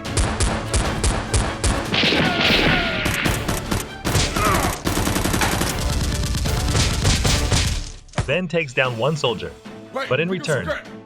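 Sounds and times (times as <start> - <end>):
rapid gunfire: 0.0 - 7.9
music: 0.0 - 11.0.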